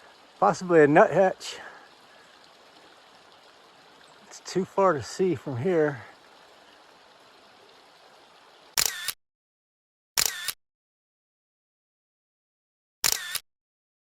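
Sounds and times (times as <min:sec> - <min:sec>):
small creek rushing: 0:00.0 - 0:09.1
camera shutter clicks: 0:08.8 - 0:09.2, 0:10.2 - 0:10.6, 0:13.0 - 0:13.4.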